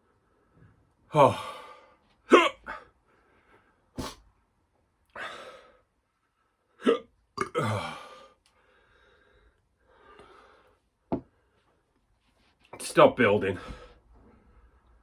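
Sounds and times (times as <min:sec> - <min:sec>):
man groaning: 0:01.1 - 0:02.8, 0:06.9 - 0:08.2
man hiccupping: 0:02.3 - 0:02.9, 0:06.8 - 0:08.1
hard breathing: 0:05.2 - 0:05.8, 0:07.8 - 0:11.8.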